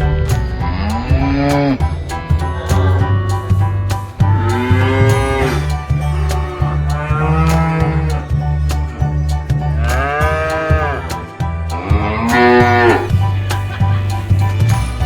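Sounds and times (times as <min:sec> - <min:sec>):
background music with low beat: 0:00.0 - 0:15.0
cows mooing: 0:09.8 - 0:13.1.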